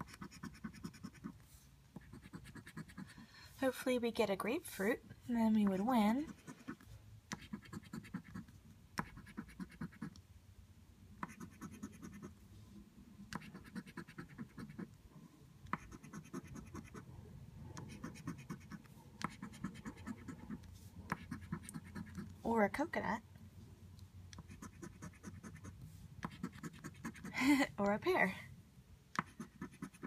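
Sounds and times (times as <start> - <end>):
scratching lottery ticket: 0.0 - 3.2, 5.7 - 10.1, 11.2 - 12.4, 15.7 - 17.1, 17.8 - 22.3, 24.4 - 27.4, 29.2 - 30.0.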